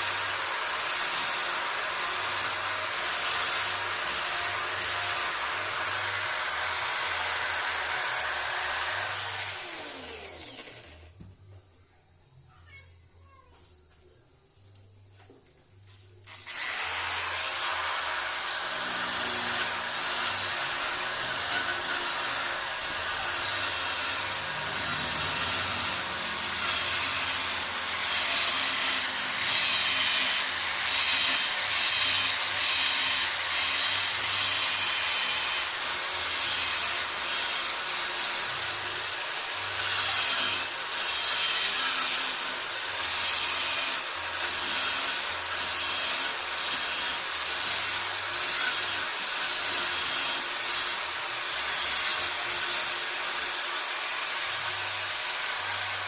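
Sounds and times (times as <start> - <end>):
power carving tool grinding wood: 0.0 - 11.0, 16.3 - 56.0.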